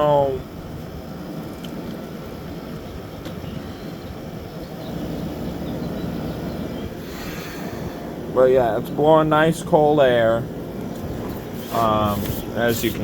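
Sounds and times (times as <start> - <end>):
air conditioner humming: 0.0 - 13.0.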